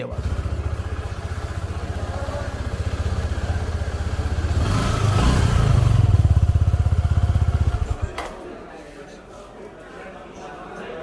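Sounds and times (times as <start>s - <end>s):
motorcycle engine idling and revving: 0.1s - 8.2s.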